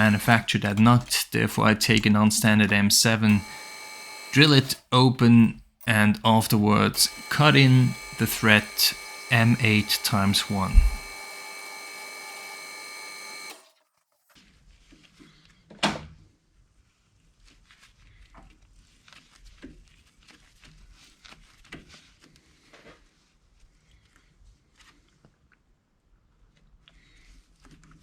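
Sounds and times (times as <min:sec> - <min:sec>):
electrical hum: 0:00.0 - 0:13.6.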